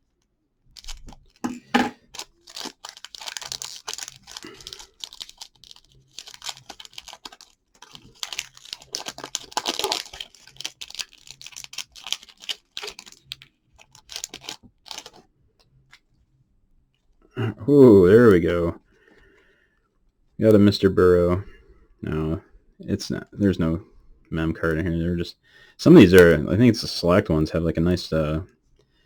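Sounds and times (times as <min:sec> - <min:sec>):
cards being handled: 0:00.8 - 0:15.2
wrapper tearing and crinkling: 0:00.8 - 0:15.2.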